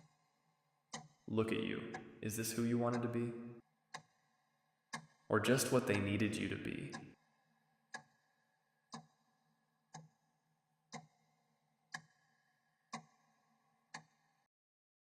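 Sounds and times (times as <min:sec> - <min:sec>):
clock ticking: 0:00.9 - 0:04.1, 0:04.9 - 0:07.2, 0:11.9 - 0:12.1.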